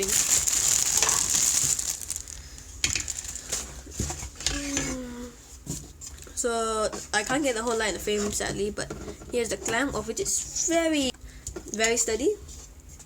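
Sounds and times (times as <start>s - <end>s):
plastic wrapping crinkling: 0.0s - 4.0s.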